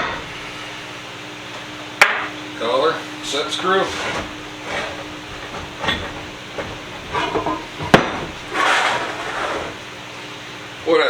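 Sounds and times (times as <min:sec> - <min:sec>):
short scraping rush: 0:03.0 - 0:09.9
metal parts knocking: 0:03.2 - 0:09.8.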